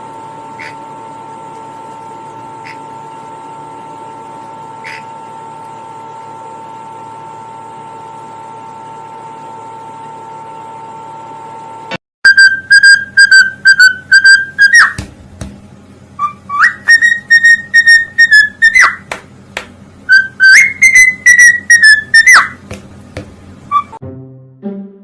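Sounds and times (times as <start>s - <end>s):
parrot whistling: 12.2s - 15.0s, 16.2s - 19.1s, 20.1s - 22.7s, 23.7s - 24.0s.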